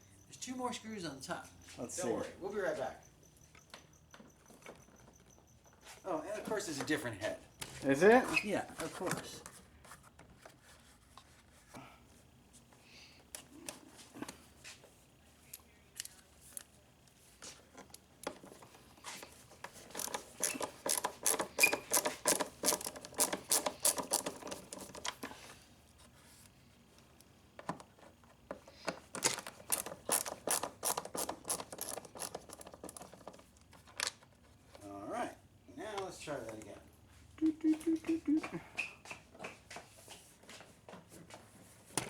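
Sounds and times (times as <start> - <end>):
ratchet driver clicking: 19.6 - 25.2, 29.2 - 33.3.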